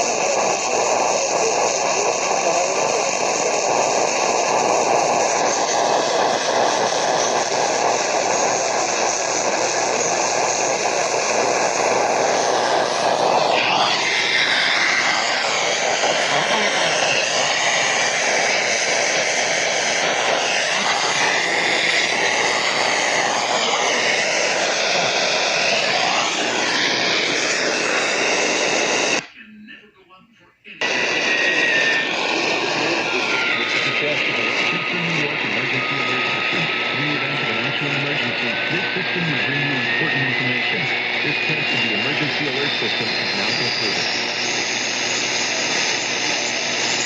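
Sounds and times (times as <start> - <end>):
radio static hiss: 0.0 - 47.0.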